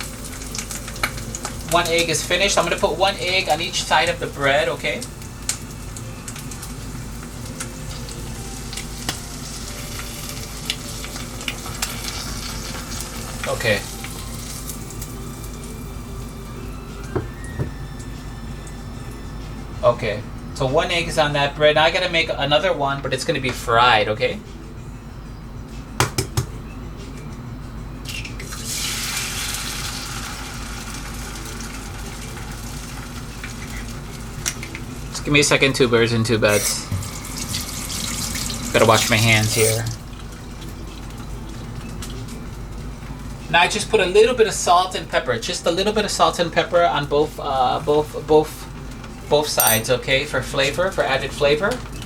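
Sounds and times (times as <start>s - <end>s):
oil sizzling in frying pan: 0.0s - 17.4s, 28.1s - 35.2s, 36.9s - 45.2s.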